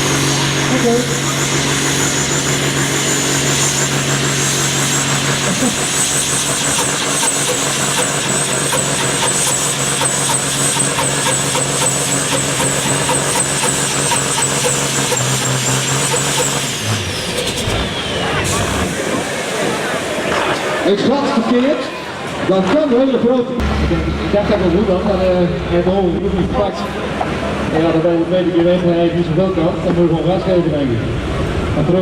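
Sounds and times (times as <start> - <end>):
heavy truck engine running: 0.0 - 22.5, 23.6 - 32.0.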